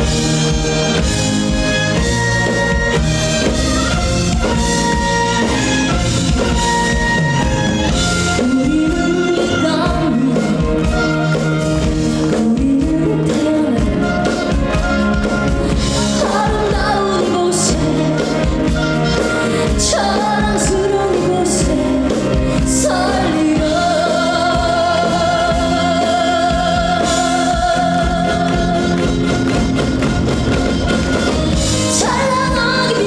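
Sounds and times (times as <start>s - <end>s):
instrumental accompaniment: 0.0s - 33.0s
woman singing: 8.1s - 29.6s, 31.8s - 33.0s.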